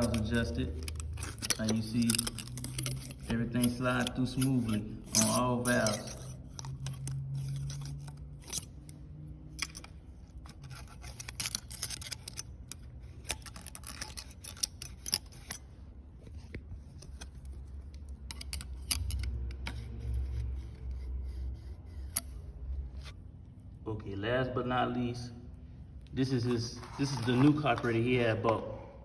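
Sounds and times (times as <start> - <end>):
metal parts clicking and tapping: 0.0 - 15.8, 16.4 - 20.8.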